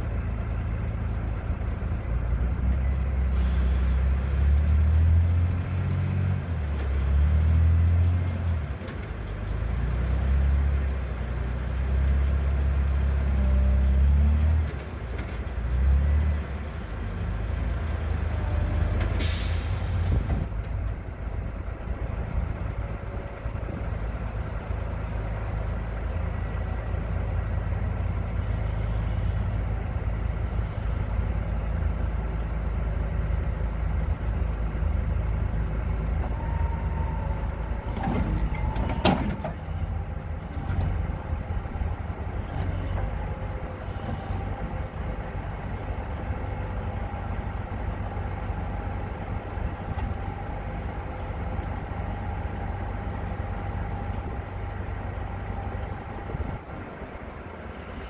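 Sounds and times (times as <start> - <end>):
diesel engine revving: 0.0 - 58.0.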